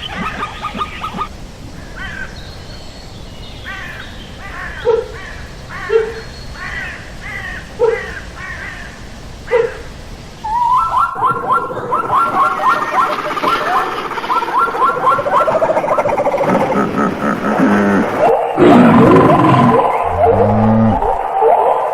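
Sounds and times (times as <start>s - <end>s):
animal calls: 0.0s - 1.3s, 10.5s - 21.9s
animal chatter: 0.0s - 1.3s, 11.2s - 21.1s.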